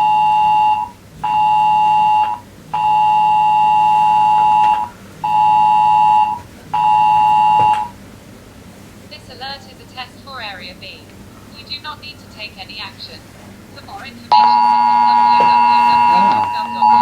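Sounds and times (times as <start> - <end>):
phone emergency alert tone: 0.0 - 7.9, 11.6 - 17.0.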